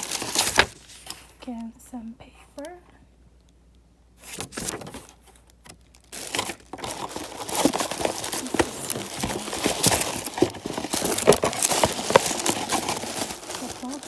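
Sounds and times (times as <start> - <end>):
paper being crumpled: 0.0 - 1.3, 4.2 - 14.0.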